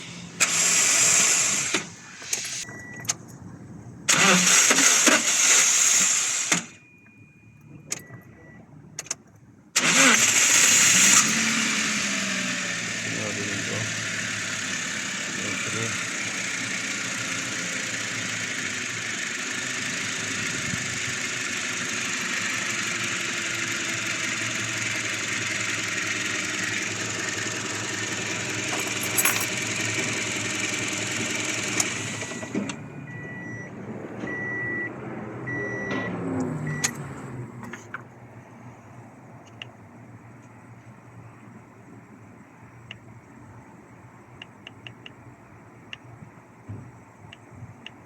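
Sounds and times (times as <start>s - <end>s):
van engine idling: 0.0s - 6.9s, 7.6s - 34.9s
electronic warning beeps: 6.7s - 8.7s, 32.9s - 34.9s, 35.5s - 37.0s.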